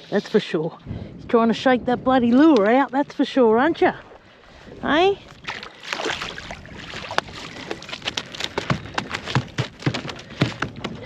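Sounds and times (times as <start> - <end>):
fish flapping and slapping: 5.3 - 11.0.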